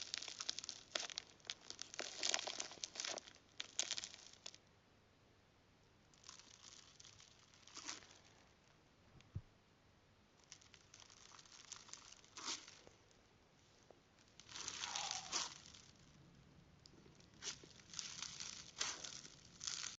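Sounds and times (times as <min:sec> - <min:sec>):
slime crackling and popping: 0:00.0 - 0:04.6, 0:06.2 - 0:08.4, 0:10.4 - 0:13.1, 0:14.2 - 0:16.2, 0:16.8 - 0:20.0.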